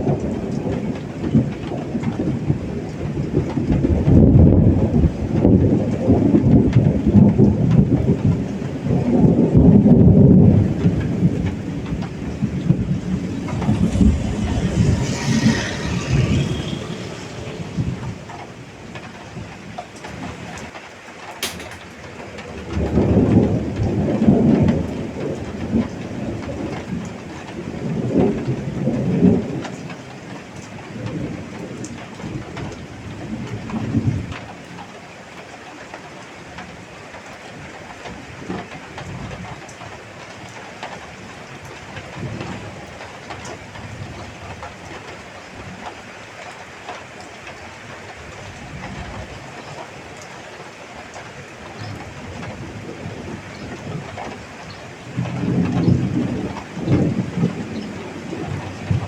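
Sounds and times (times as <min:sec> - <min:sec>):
rolling thunder: 0:00.0 - 0:20.8, 0:21.4 - 0:30.3, 0:51.9 - 0:59.0
heavy rain: 0:00.0 - 0:59.0.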